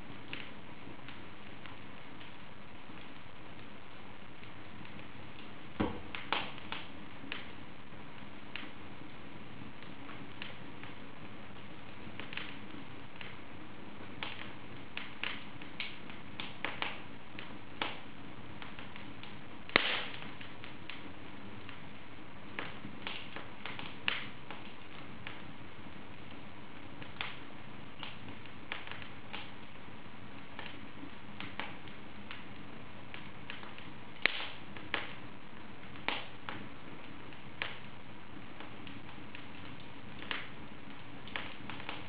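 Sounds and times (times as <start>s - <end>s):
low hiss of fire: 0.0s - 42.0s
wood fire crackling and popping: 0.0s - 42.0s.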